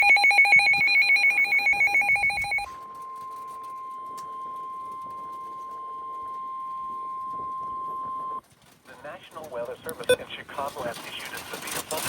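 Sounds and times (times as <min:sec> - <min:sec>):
single-pitch warning alarm tone: 0:00.0 - 0:08.4.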